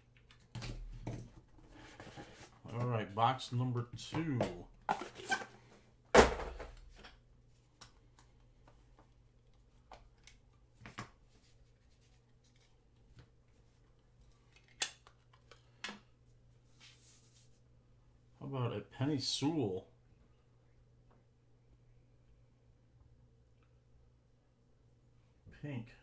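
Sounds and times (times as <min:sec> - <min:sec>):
packaging clicks and scrapes: 0:04.9 - 0:05.7.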